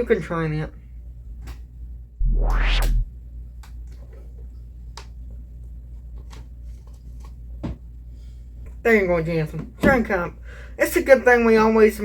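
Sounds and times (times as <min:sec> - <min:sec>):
steady low hum: 0:02.1 - 0:03.4.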